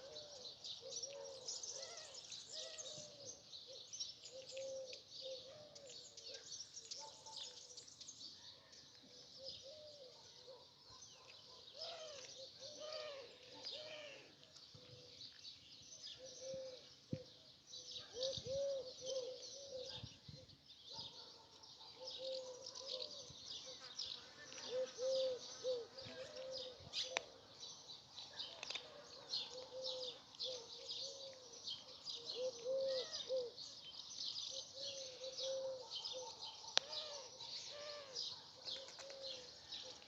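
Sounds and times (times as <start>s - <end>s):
small birds chirping: 0.0s - 40.0s
soft cooing: 24.6s - 26.8s, 32.4s - 33.6s.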